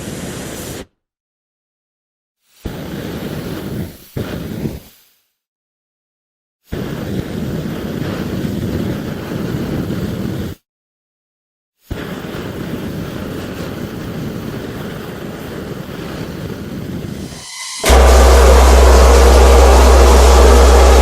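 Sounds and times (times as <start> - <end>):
flamethrower blasts: 16.7 - 21.0.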